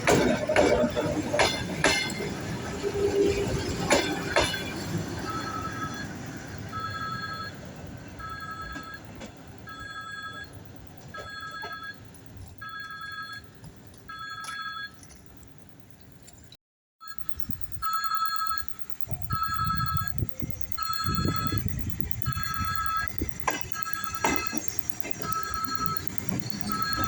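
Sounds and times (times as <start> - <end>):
two-tone warning beep: 6.7 - 7.6, 8.2 - 10.6, 11.2 - 12.0, 17.0 - 27.0.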